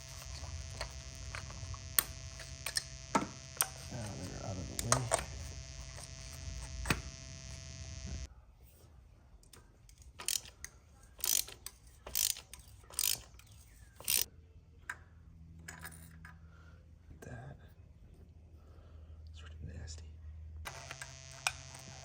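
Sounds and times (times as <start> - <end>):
clicks: 0.0 - 8.3, 20.7 - 22.0
steady hum: 0.0 - 8.3, 20.7 - 22.0
ratchet wrench strokes: 10.2 - 10.5, 11.2 - 13.3, 14.0 - 14.3.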